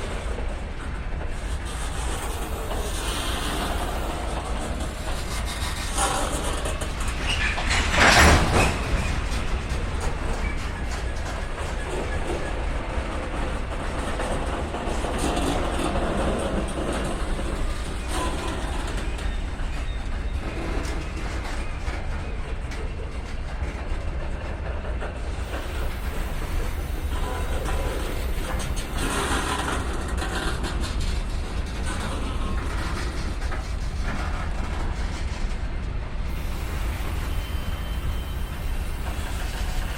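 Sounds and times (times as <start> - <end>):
train wheels rumbling on rail: 0.0 - 39.9
wheels and couplings clacking: 0.0 - 39.9.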